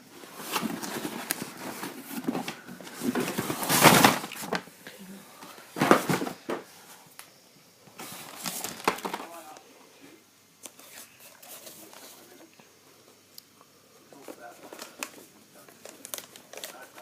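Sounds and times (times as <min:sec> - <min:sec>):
handling rustles and knocks: 0:00.2 - 0:04.7, 0:05.8 - 0:06.7.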